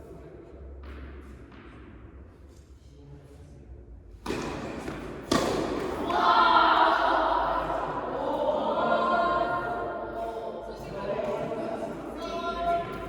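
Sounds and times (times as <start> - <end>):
tennis ball hit: 4.2 - 6.2
people talking and calling out: 5.8 - 13.0.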